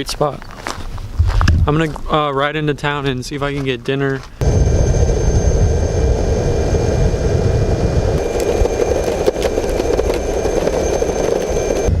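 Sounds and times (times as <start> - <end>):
wind buffeting microphone: 4.4 - 12.0.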